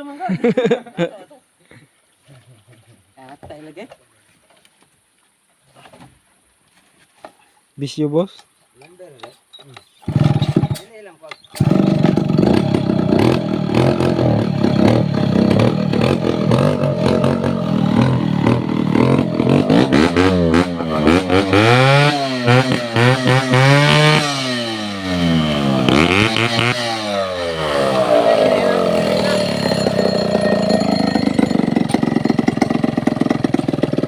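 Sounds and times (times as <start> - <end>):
chainsaw engine revving: 10.0 - 10.9, 11.5 - 34.0.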